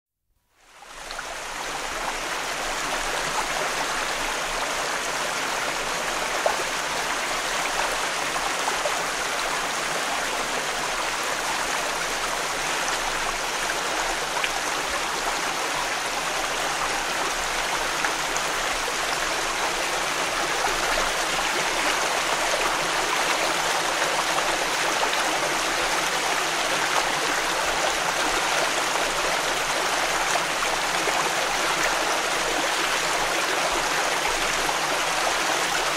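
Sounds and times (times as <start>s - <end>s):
stream flowing over rocks: 0.6s - 35.9s.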